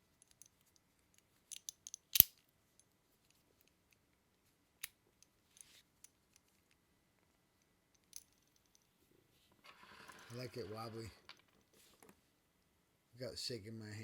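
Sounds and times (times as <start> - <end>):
metal fidget toy clicking: 1.5 - 2.3.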